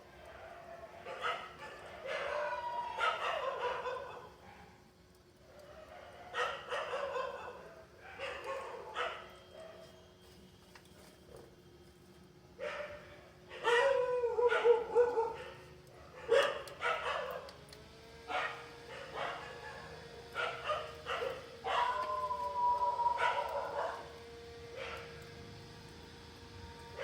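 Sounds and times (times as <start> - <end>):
dog barking and howling: 0.2 - 4.7, 5.5 - 10.0, 12.6 - 17.6, 18.2 - 25.2.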